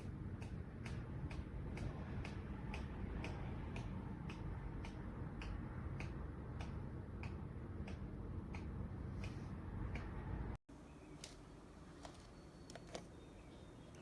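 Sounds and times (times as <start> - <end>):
light sharp ticks: 0.4 - 10.2.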